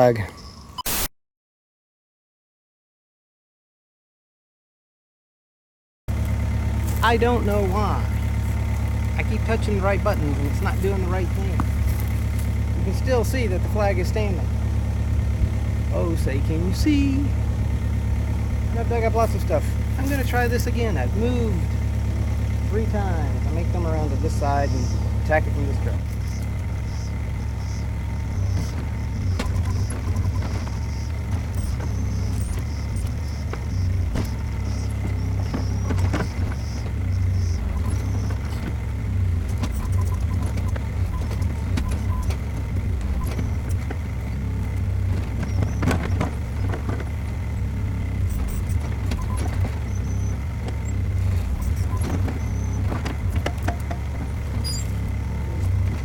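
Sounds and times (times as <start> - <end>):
skid steer engine running: 6.1 - 56.0
knocks and clanks: 26.0 - 38.8, 39.4 - 56.0.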